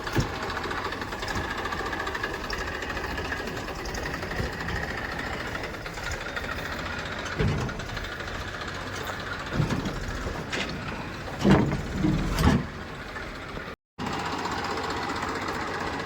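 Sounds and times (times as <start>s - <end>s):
heavy clunks: 0.0s - 13.8s
heavy machinery diesel engine: 0.0s - 16.0s.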